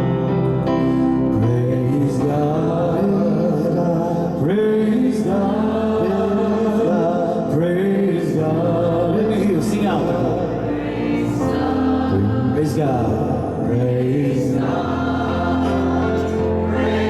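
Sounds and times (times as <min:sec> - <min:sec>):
man singing a hymn: 0:01.3 - 0:10.8, 0:12.1 - 0:17.0
guitar accompaniment: 0:13.7 - 0:17.0.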